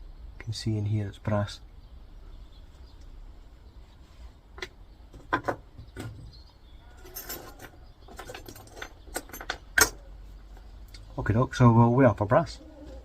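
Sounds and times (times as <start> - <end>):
small brass pieces clinking: 6.8 - 10.0.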